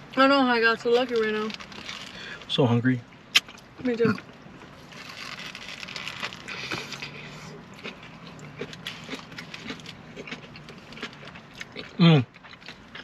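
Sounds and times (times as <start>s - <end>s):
person chewing food: 4.9s - 13.0s.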